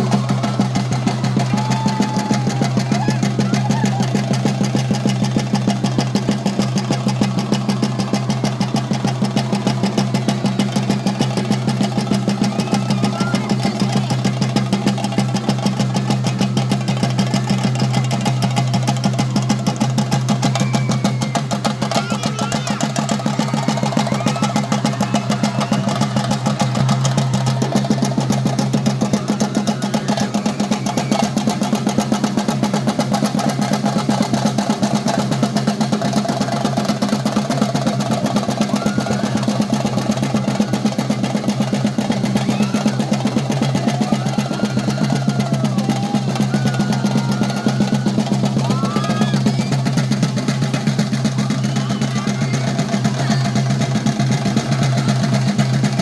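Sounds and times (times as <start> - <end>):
drums in fast roll: 0.0 - 56.0
short high calls: 20.4 - 32.0.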